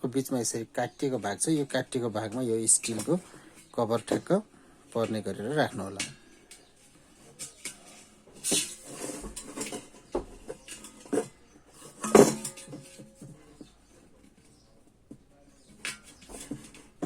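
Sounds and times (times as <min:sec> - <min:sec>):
kettle metal parts clattering: 0:02.3 - 0:04.4, 0:05.7 - 0:14.5, 0:15.6 - 0:17.0.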